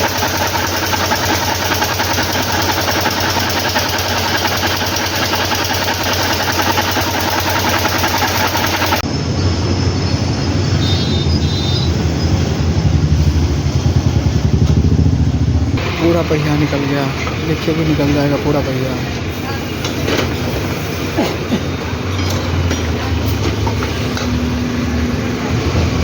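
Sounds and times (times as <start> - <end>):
motorcycle engine running: 0.0 - 9.0, 10.8 - 18.0.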